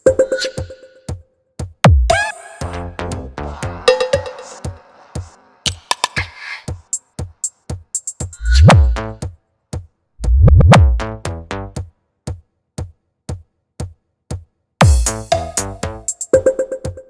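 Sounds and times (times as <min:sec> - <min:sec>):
heavy bass and busy percussion: 0:00.0 - 0:12.9, 0:13.8 - 0:17.0
drum machine ticks: 0:00.0 - 0:17.0
booming bass hit falling in pitch: 0:10.2 - 0:11.8.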